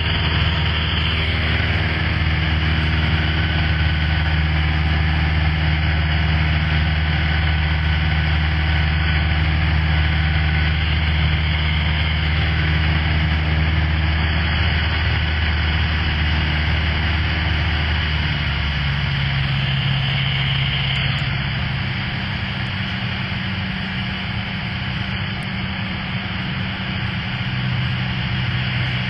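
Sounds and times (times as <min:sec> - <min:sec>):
propeller plane engine droning: 0:00.0 - 0:29.0.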